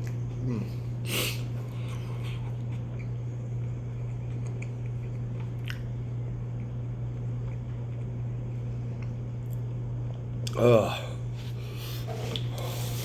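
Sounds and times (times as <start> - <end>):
steady low hum: 0.0 - 13.0
person chewing a cracker: 1.3 - 8.2.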